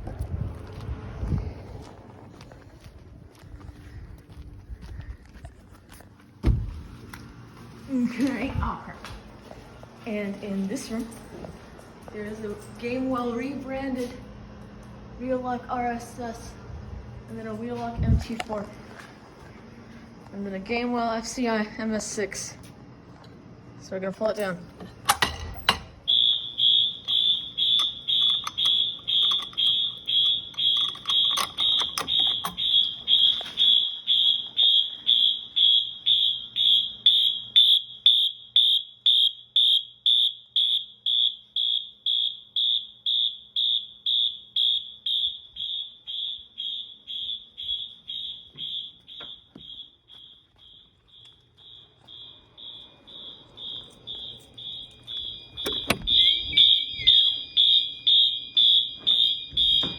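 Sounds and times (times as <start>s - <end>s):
fire alarm horn beeping: 26.0s - 59.9s.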